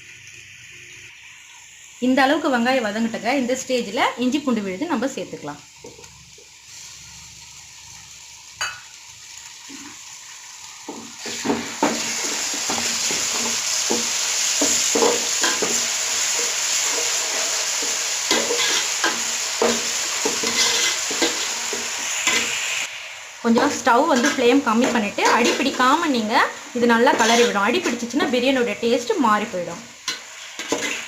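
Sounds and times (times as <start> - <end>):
paste sizzling in hot oil: 0.0 - 31.0
spoon stirring and knocking pan: 10.9 - 17.2, 17.8 - 22.4, 23.5 - 25.9, 27.0 - 28.1, 30.0 - 31.0.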